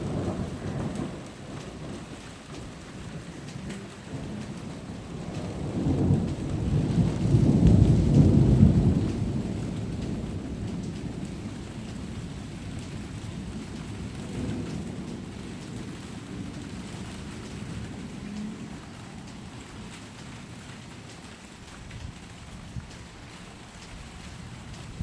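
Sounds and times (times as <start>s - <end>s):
rolling thunder: 0.0s - 19.9s.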